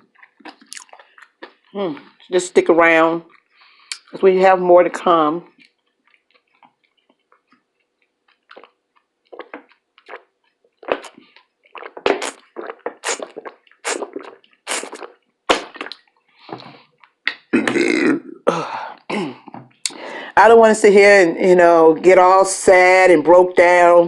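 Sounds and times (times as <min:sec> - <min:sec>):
person chewing food: 0:00.0 - 0:02.4, 0:03.2 - 0:04.2, 0:05.4 - 0:17.6.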